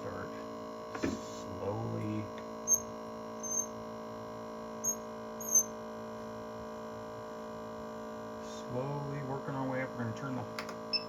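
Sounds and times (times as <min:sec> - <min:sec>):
electrical hum of suction machine: 0:00.0 - 0:11.0.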